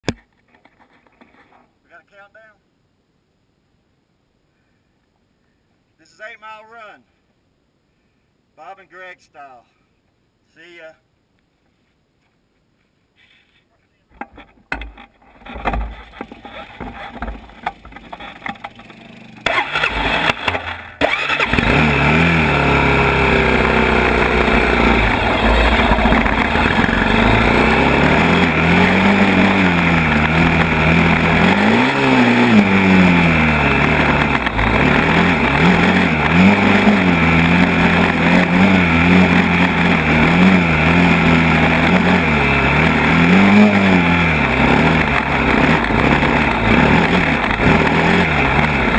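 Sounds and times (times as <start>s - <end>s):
atv engine revving: 15.4s - 48.9s.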